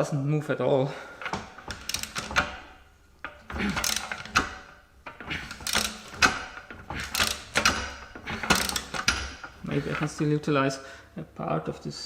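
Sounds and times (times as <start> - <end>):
ratchet wrench clicking: 1.3 - 4.8, 5.4 - 9.5.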